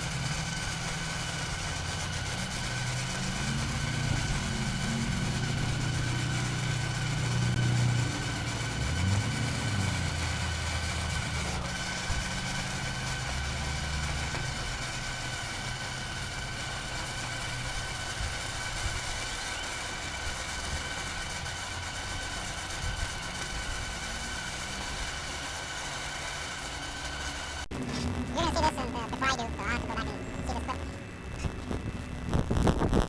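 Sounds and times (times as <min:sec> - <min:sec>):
welding arc sizzling crackle: 0:00.0 - 0:09.4, 0:10.2 - 0:19.3, 0:27.7 - 0:33.0.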